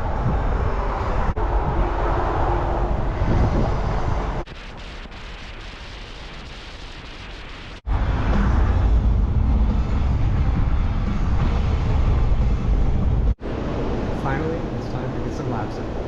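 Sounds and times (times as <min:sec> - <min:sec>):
vehicle road rumble: 0:00.0 - 0:04.5, 0:07.8 - 0:15.3
wind noise on microphone: 0:00.0 - 0:05.4.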